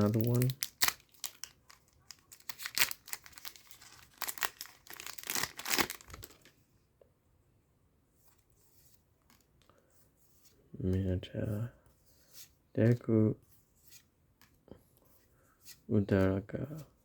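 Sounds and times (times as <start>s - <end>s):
plastic wrapper tearing and crinkling: 0.0s - 6.5s.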